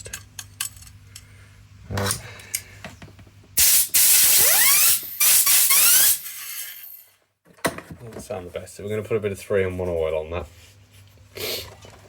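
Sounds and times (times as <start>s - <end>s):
compressed air blasts: 3.6s - 7.0s
spinning sprocket whine: 3.9s - 7.0s.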